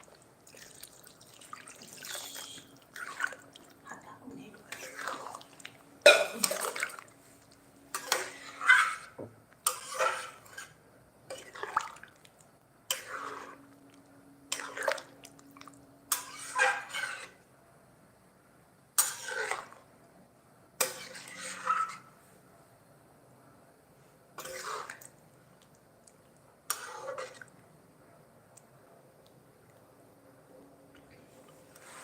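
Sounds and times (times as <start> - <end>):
water splashing: 0.0 - 3.8, 4.6 - 7.1.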